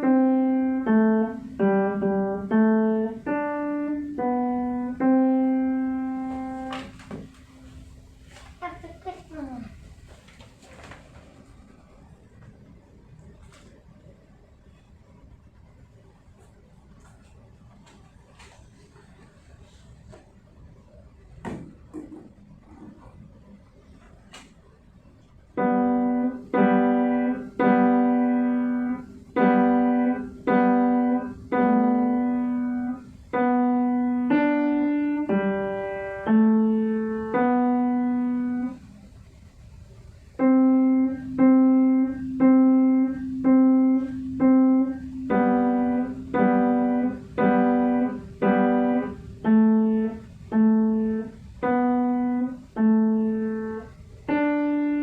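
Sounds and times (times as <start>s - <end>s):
slow piano melody: 0.0s - 8.0s, 25.5s - 39.2s, 40.2s - 55.0s.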